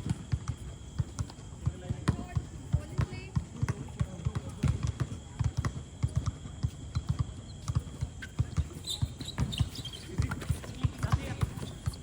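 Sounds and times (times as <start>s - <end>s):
basketball bouncing: 0.0s - 12.0s
short high shoe squeaks: 8.2s - 12.0s.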